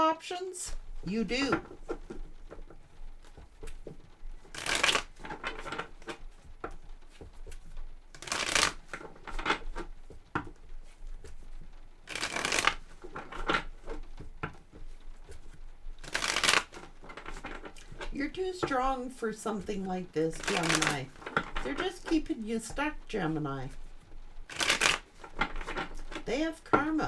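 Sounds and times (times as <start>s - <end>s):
cards shuffling: 0.7s - 27.0s
soft card clicks and slides: 14.7s - 27.0s.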